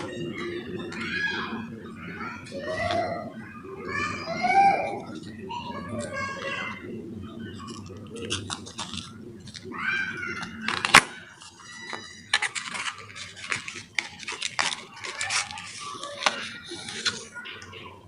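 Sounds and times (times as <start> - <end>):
packaging crinkling: 7.6 - 9.7, 10.3 - 17.4.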